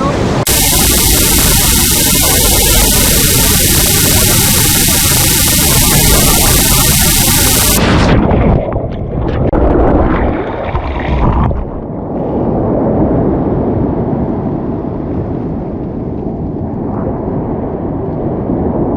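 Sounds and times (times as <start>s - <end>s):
surf breaking water rumbling: 0.0s - 15.1s.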